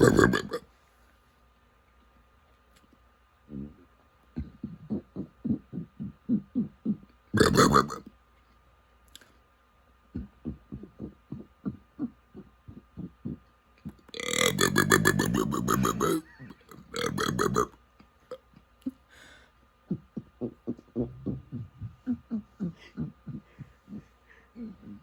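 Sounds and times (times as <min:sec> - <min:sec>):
person burping: 0:00.0 - 0:00.6, 0:04.4 - 0:08.1, 0:12.9 - 0:18.4.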